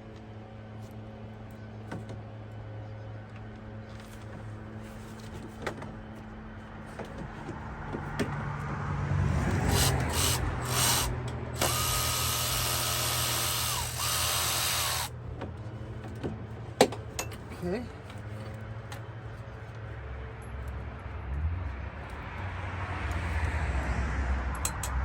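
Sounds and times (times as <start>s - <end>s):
electric ratchet whining: 9.7s - 15.1s.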